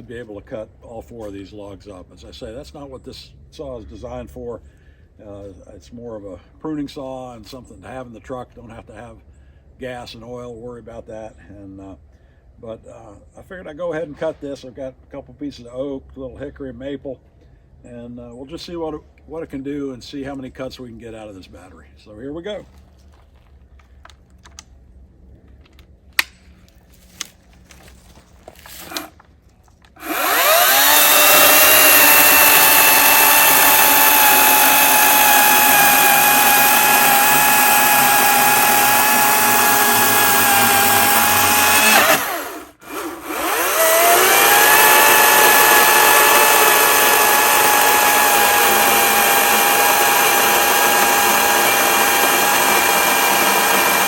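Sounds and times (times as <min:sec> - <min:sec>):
electric chainsaw whine: 0:28.6 - 0:29.2, 0:30.0 - 0:54.0.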